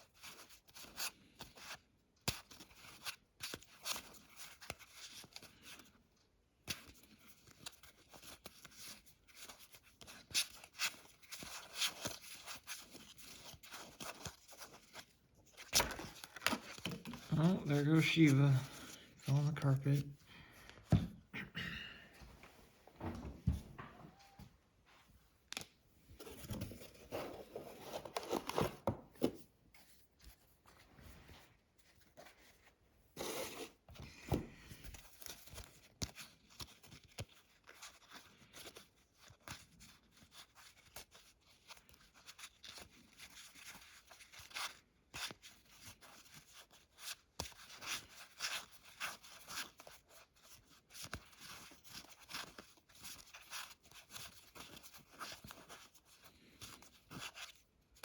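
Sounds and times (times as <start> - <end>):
cards rustling: 6.7 - 20.9, 25.5 - 30.8, 34.8 - 58.0.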